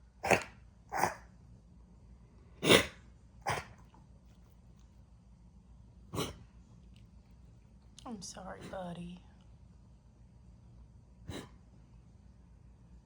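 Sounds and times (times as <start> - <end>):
dog coughing: 0.2 - 1.2, 2.6 - 3.8, 6.1 - 6.4, 11.3 - 11.6.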